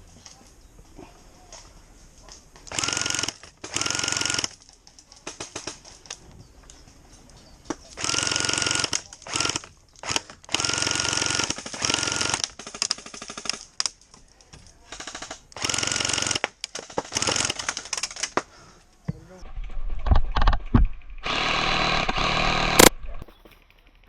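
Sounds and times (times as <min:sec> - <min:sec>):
airsoft guns firing bursts: 0:02.7 - 0:04.6, 0:05.2 - 0:06.1, 0:07.9 - 0:14.0, 0:14.9 - 0:18.4
gun motor whine: 0:21.2 - 0:22.9.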